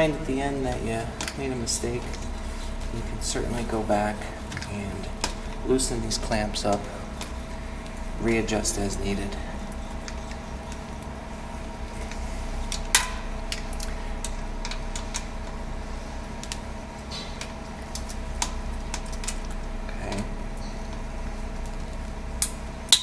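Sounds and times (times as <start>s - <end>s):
hand tools clicking on metal: 0.0s - 2.4s
steady hum: 0.0s - 23.0s.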